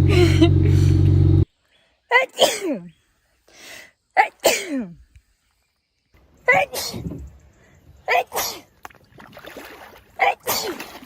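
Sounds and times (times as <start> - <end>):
woman sneezing: 2.4 - 2.9, 6.5 - 7.1, 8.2 - 8.6
breath: 3.4 - 4.0.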